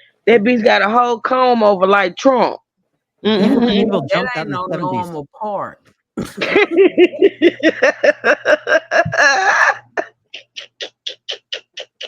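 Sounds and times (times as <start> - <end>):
person laughing hard: 3.3 - 5.1, 6.2 - 12.0.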